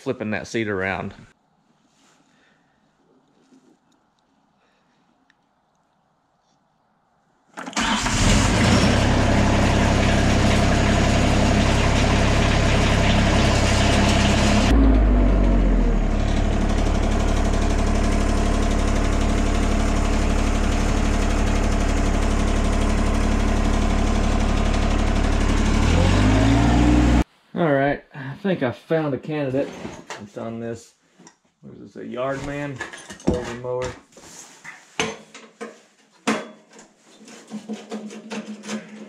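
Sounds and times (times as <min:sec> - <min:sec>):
vehicle engine running: 0:08.1 - 0:27.2.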